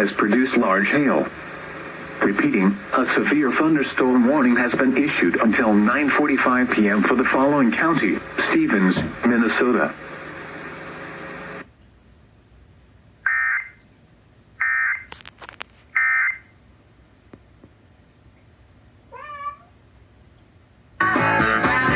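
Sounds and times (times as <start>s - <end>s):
meow-like call: 19.1s - 19.7s.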